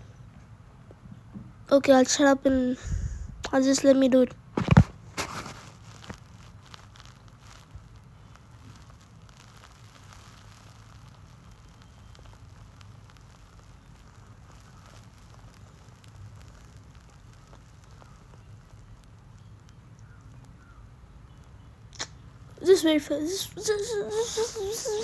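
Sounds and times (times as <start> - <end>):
chicken deep-frying in oil: 5.7 - 21.6.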